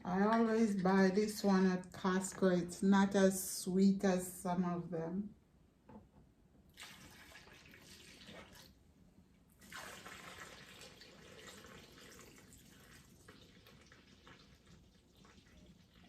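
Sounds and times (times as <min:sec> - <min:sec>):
cider pouring and splashing: 0:06.7 - 0:08.8, 0:09.5 - 0:16.0.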